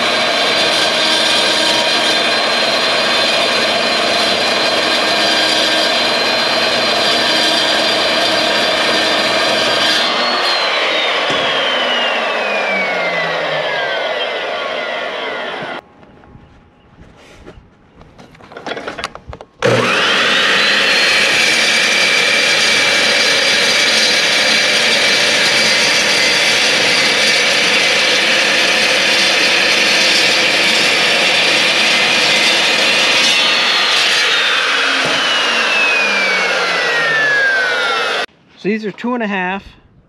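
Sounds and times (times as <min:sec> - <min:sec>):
chop saw whining: 0:00.0 - 0:15.8, 0:18.5 - 0:38.3
saw grinding through steel: 0:00.0 - 0:15.8, 0:19.6 - 0:38.3.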